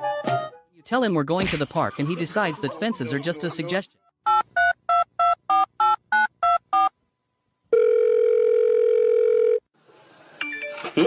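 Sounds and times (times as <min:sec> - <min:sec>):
steady telephone tone: 0:07.7 - 0:09.7.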